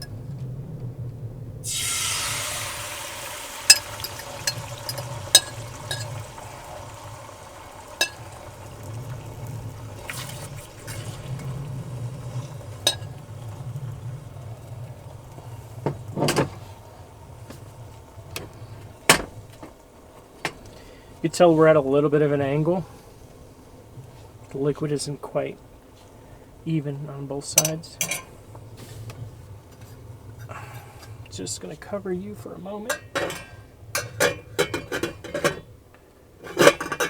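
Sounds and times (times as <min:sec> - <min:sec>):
eggs sizzling in a pan: 0:01.6 - 0:31.5
utensil clicking on pan: 0:03.6 - 0:06.3, 0:08.0 - 0:08.4.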